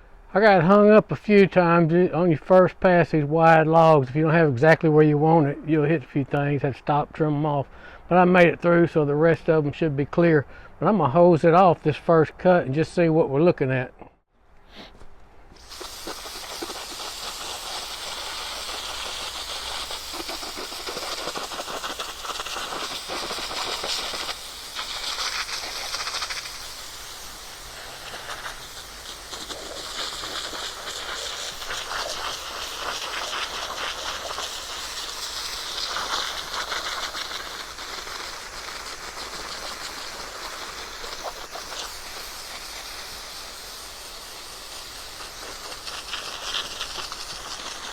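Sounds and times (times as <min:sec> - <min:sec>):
hose spraying water on wood: 0:15.6 - 0:47.9.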